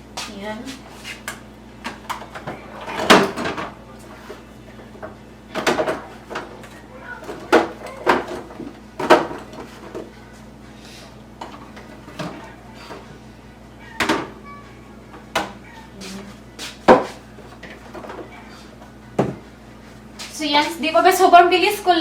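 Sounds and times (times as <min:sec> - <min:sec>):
containers clunking on fridge shelves: 0:01.3 - 0:10.1, 0:11.4 - 0:13.1, 0:13.9 - 0:16.0, 0:16.7 - 0:19.5.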